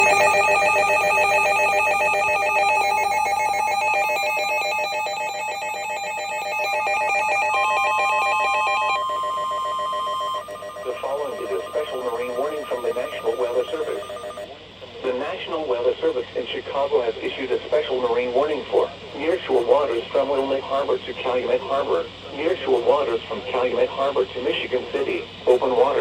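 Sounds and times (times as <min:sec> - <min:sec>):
steady single alarm tone: 0:00.0 - 0:14.5
warbling electronic alarm tone: 0:00.0 - 0:14.5.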